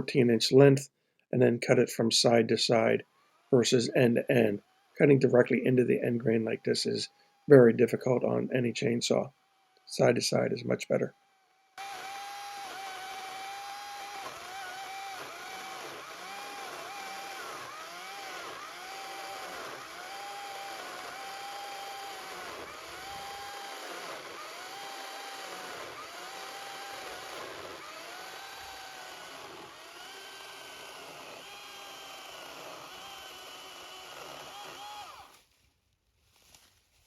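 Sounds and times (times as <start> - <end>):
electric chainsaw cutting log: 3.0 - 3.8, 4.5 - 7.6, 9.2 - 9.9, 11.1 - 35.5.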